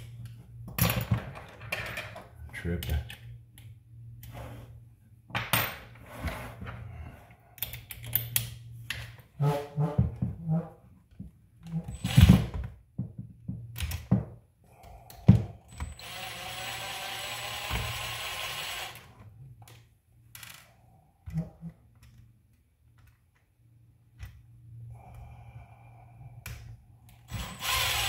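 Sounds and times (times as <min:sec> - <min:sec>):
small electric screwdriver running: 0:16.0 - 0:19.0, 0:27.3 - 0:28.0.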